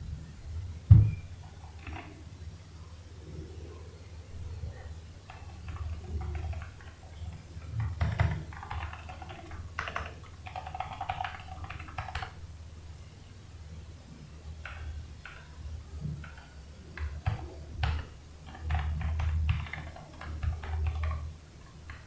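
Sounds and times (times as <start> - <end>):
steady low hum: 0.0 - 22.0
knock: 0.9 - 1.2
mechanical keyboard typing: 1.4 - 2.2, 5.2 - 12.4, 16.2 - 22.0.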